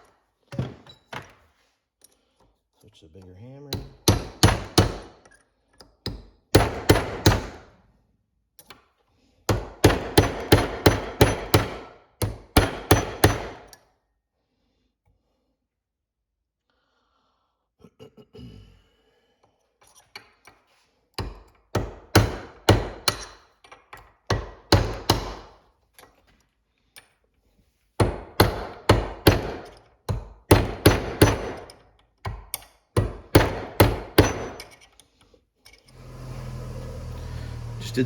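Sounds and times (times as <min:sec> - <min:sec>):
hammer striking steel punch: 0:03.8 - 0:05.1, 0:30.5 - 0:31.7, 0:33.0 - 0:34.7.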